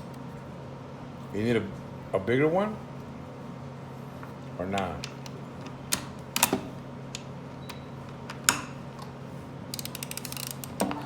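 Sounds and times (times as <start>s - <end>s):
ratchet clicking: 9.7s - 10.8s.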